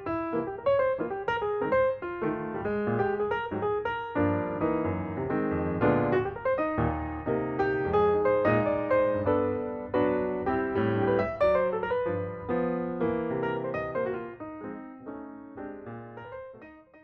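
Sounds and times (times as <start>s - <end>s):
piano music: 0.0s - 17.0s.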